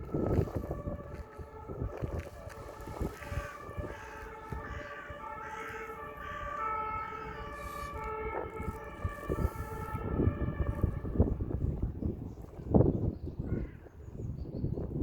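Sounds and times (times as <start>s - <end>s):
distant siren wailing: 0.0s - 12.6s.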